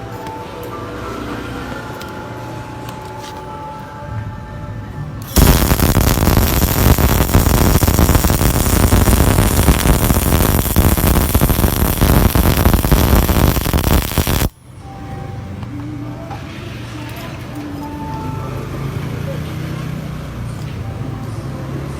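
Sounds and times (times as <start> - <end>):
welding arc crackling: 5.2 - 14.6.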